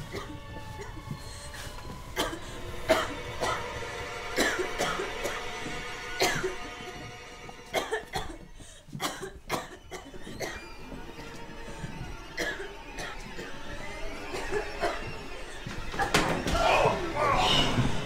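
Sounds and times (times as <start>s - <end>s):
background music with held tones: 0.0s - 18.0s.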